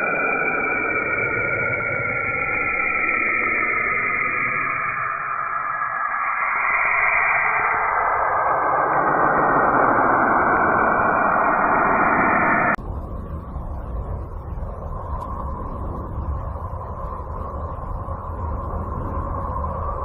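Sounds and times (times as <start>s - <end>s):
deep rumble: 0.0s - 20.0s.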